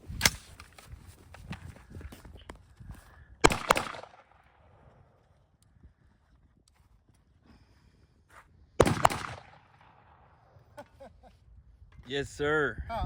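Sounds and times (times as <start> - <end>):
gunshots: 3.4 - 4.4, 8.8 - 10.4.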